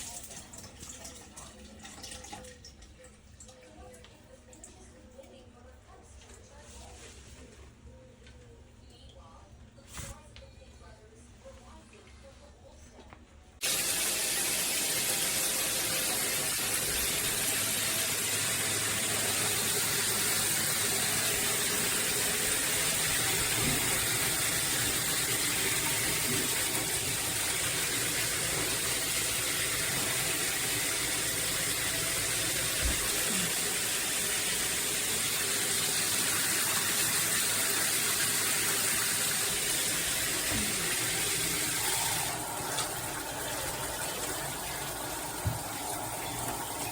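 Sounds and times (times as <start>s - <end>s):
shower head spraying water: 13.6s - 46.9s.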